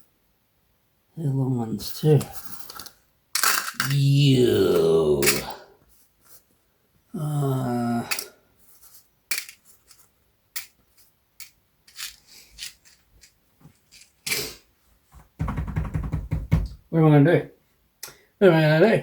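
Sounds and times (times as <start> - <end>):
small screws clicking and rattling: 2.2 - 4.0, 9.3 - 10.8, 11.4 - 14.5
person humming: 3.8 - 5.7, 7.2 - 8.3.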